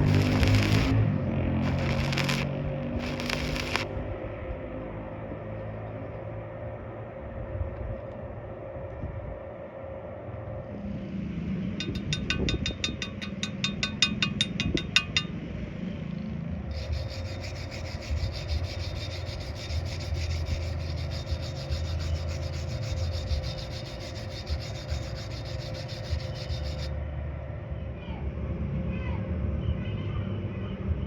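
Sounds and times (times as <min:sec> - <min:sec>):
rapid scraping on metal: 0:00.0 - 0:03.9, 0:16.7 - 0:26.9.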